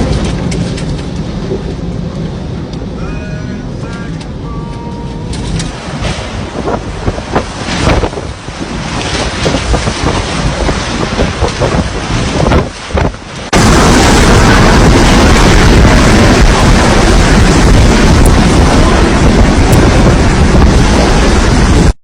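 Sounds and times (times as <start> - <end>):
wind buffeting microphone: 5.4 - 22.0.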